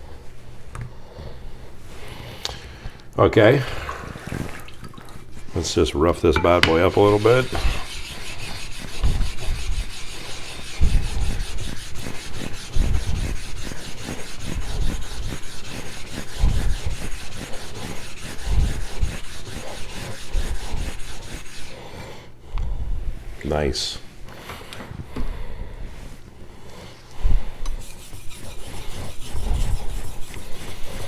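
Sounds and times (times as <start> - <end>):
knife scraping on whetstone: 6.7 - 21.8, 27.7 - 31.0.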